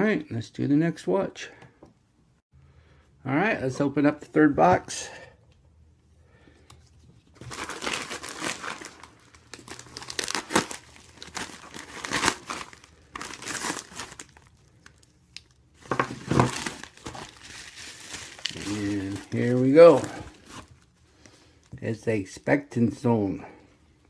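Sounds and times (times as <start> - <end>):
packaging crinkling and tearing: 7.2 - 21.7.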